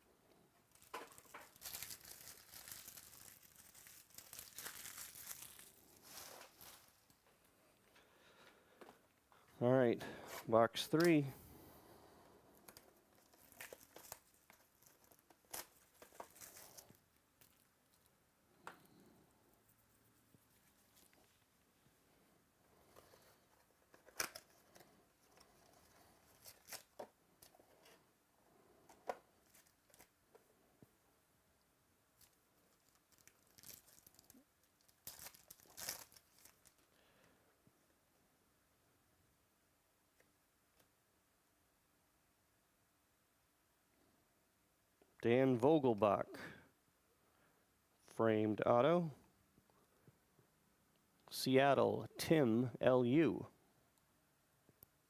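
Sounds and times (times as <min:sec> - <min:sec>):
packaging crinkling: 0:00.7 - 0:07.2, 0:12.6 - 0:17.7, 0:22.8 - 0:27.1, 0:32.2 - 0:36.9.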